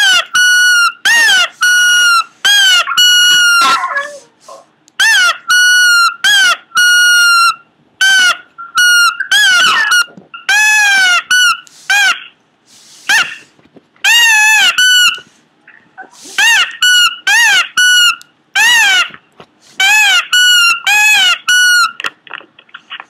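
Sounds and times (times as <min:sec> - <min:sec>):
dog whining in high squeals: 0:00.0 - 0:12.2, 0:14.1 - 0:15.3, 0:19.8 - 0:22.0.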